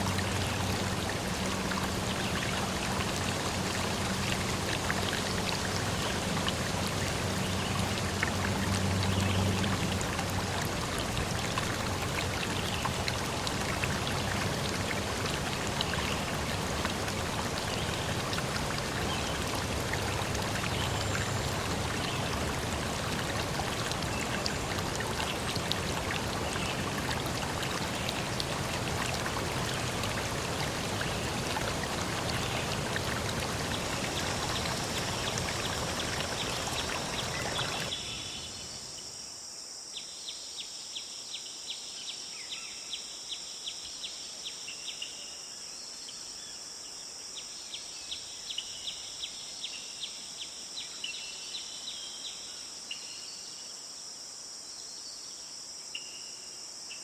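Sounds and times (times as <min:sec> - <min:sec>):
stream water rushing: 0:00.0 - 0:38.1
crickets trilling: 0:13.2 - 0:39.5.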